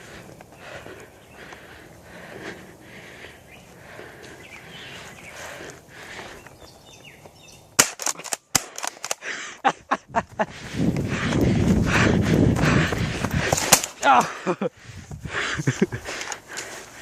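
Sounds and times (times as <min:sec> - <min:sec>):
airsoft gun firing: 0:07.8 - 0:09.2, 0:13.5 - 0:14.0.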